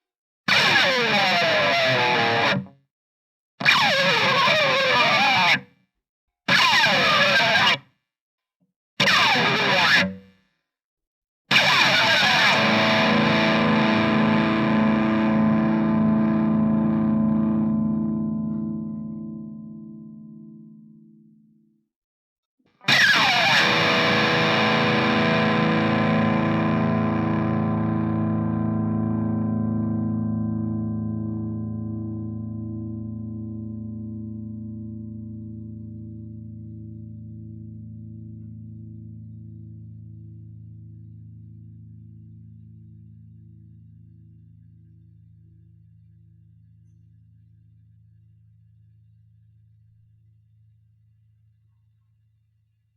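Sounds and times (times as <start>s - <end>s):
sustained distorted guitar note: 12.1s - 20.8s, 23.1s - 43.1s.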